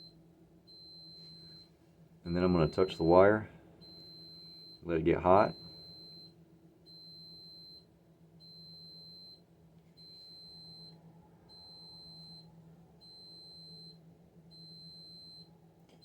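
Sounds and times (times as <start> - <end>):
electronic alarm beeping: 0.0 - 1.7, 3.8 - 9.4, 10.0 - 15.5.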